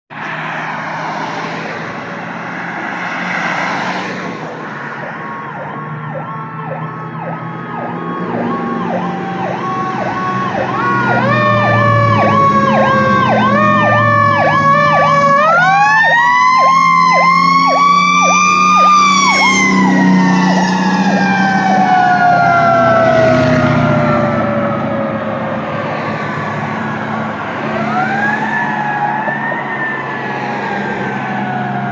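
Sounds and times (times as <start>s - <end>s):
electronic siren yelping: 4.9s - 25.1s, 26.9s - 31.9s
mechanical siren wailing: 5.0s - 25.2s, 27.0s - 31.9s.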